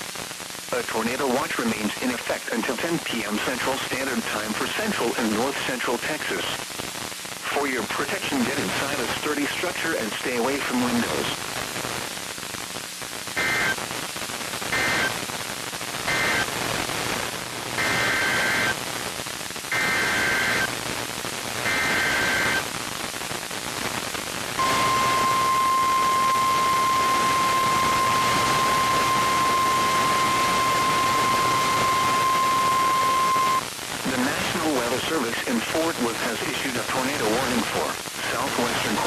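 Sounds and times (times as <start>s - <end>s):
radio hiss: 0.0s - 12.2s, 12.8s - 39.0s
steady warning alarm tone: 17.8s - 18.7s, 19.8s - 20.7s, 24.6s - 33.6s
warbling data bursts: 24.6s - 33.6s.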